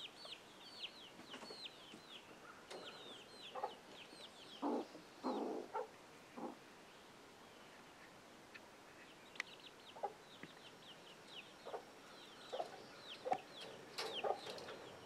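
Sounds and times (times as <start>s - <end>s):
chicks peeping: 0.0s - 6.6s, 8.9s - 15.0s
hen clucking: 2.7s - 6.6s, 9.8s - 10.5s, 11.4s - 15.0s.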